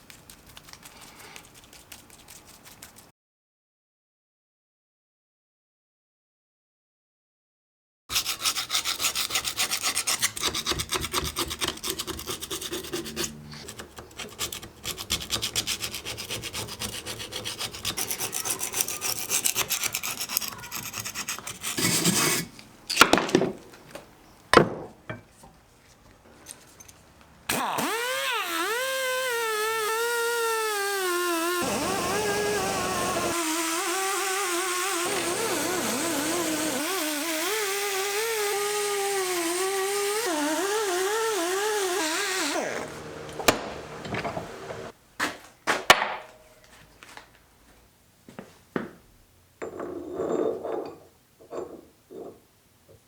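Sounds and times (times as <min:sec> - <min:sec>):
rasping scrubbing on metal: 0:08.1 - 0:22.5, 0:28.7 - 0:44.9
die grinder wire wheel whine: 0:12.5 - 0:14.0, 0:27.5 - 0:44.9.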